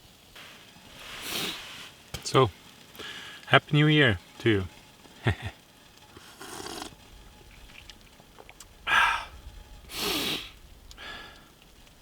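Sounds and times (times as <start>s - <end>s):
person breathing noisily: 3.0s - 3.4s, 8.9s - 11.6s.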